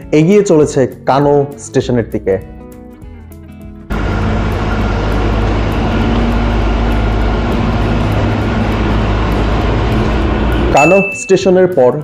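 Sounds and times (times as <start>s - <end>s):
low hum: 3.9s - 10.9s
train rumbling: 3.9s - 10.9s.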